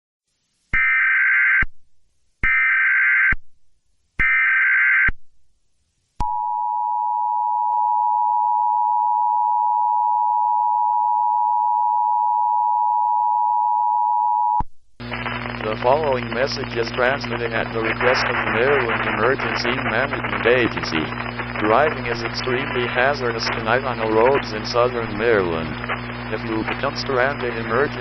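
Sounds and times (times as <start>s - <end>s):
buzzy digital header bursts: 15.0s - 28.0s.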